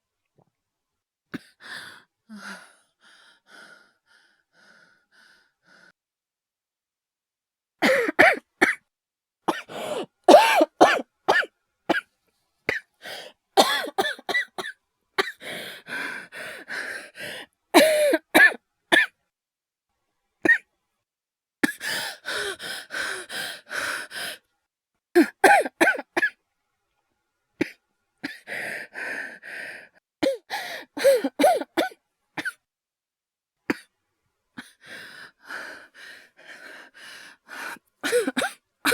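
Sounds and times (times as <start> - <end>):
person coughing: 7.8 - 8.8, 9.5 - 12.1, 13.6 - 15.4, 17.8 - 19.1, 25.2 - 26.4, 31.0 - 32.6, 38.0 - 38.9.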